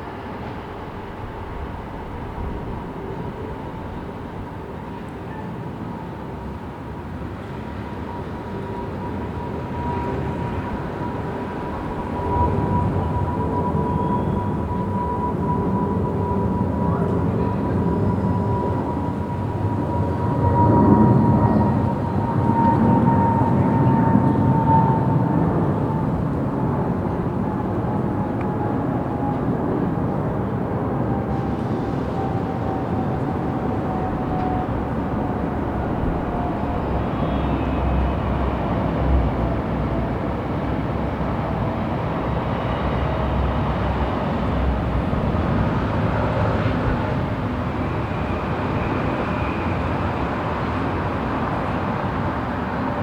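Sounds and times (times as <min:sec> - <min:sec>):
city traffic noise: 0:25.0 - 0:53.0.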